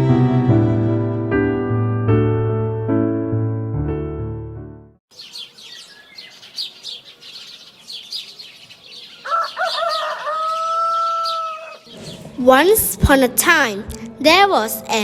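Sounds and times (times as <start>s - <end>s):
small birds chirping: 5.1s - 12.4s
rooster crowing: 9.2s - 11.9s.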